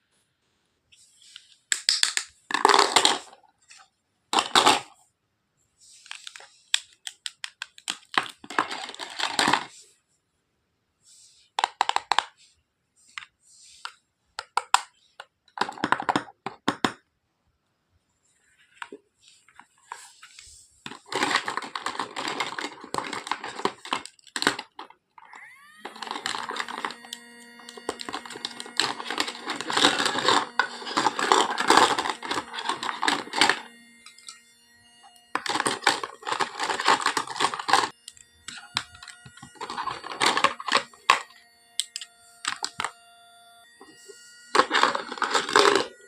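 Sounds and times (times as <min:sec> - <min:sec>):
plastic toy pieces clattering: 0:01.7 - 0:03.4, 0:04.4 - 0:05.0, 0:06.1 - 0:09.7, 0:11.6 - 0:12.3, 0:15.6 - 0:17.0, 0:20.8 - 0:25.0, 0:25.8 - 0:34.3, 0:35.3 - 0:37.9, 0:38.5 - 0:42.9, 0:44.5 - 0:46.0.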